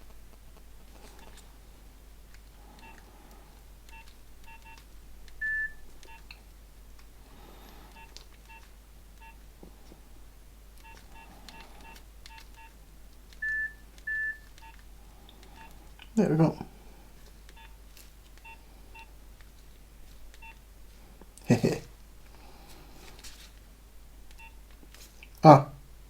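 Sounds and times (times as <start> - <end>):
phone keypad beeps: 3.9 - 4.8, 5.4 - 6.3, 7.9 - 9.4, 10.8 - 12.8, 13.4 - 14.8, 17.6 - 17.8, 18.4 - 19.1, 20.4 - 20.6, 24.4 - 24.6.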